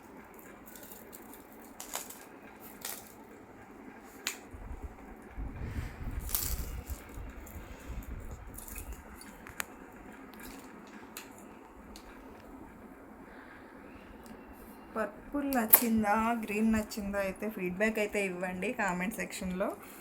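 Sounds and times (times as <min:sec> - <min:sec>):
beads and metal clinking: 0:00.4 - 0:03.2
low rubbing rumble: 0:04.5 - 0:10.1.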